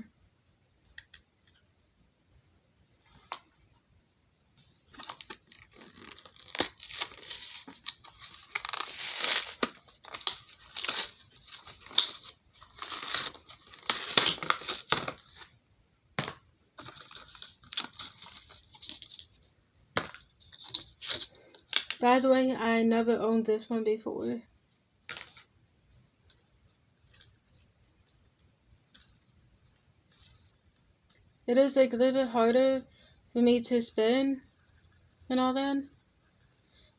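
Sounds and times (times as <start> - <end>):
plastic crinkling and tearing: 4.9 - 15.5.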